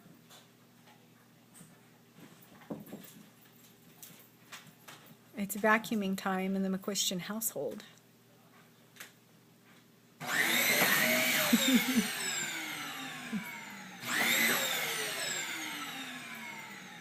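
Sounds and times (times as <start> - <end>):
vacuum cleaner motor whine: 10.2 - 17.0.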